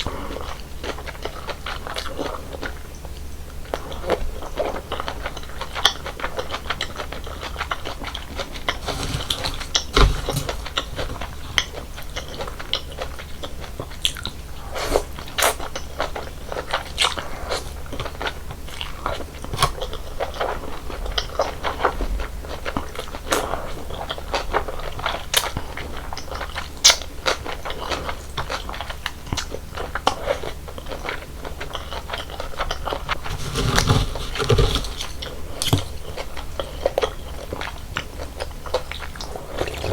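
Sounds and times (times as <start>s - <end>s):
person chewing crunchy food: 3.7s - 14.4s, 22.5s - 39.9s.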